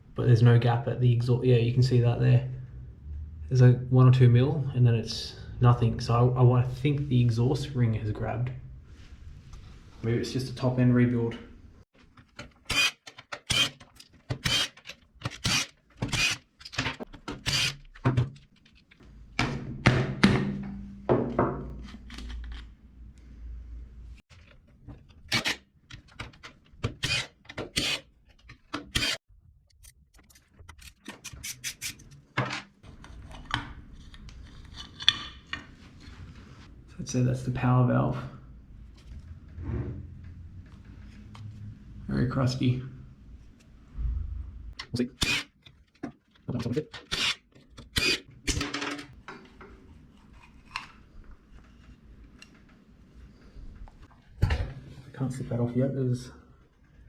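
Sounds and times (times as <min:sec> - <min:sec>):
metal parts clanking and scraping: 0:45.2 - 0:49.2.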